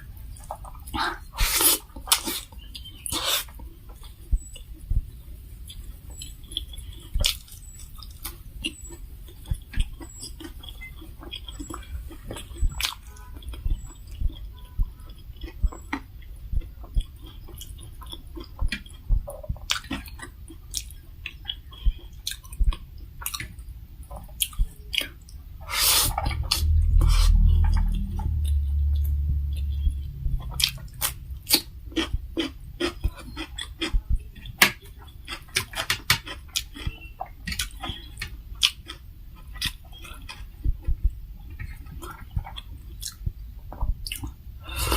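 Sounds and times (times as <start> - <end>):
chewing and mouth smacks: 0.3 - 4.9, 5.6 - 44.4
low rumble: 25.4 - 33.2, 40.6 - 44.6
noisy burst: 25.6 - 32.8.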